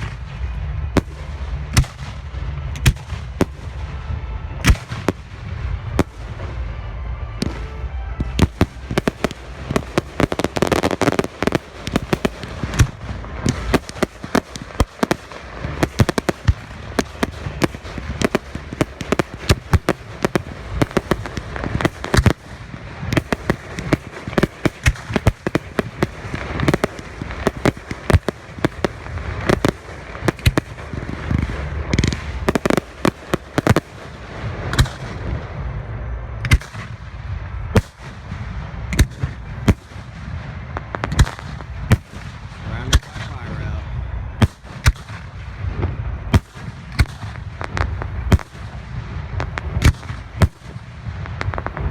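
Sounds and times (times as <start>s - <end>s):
fireworks bangs: 0.0s - 51.9s
low rumble and crackle: 0.0s - 51.9s.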